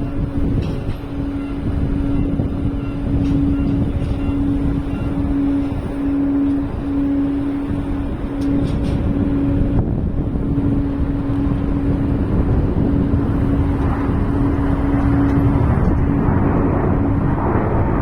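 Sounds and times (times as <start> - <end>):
jet engines roaring: 0.0 - 18.0.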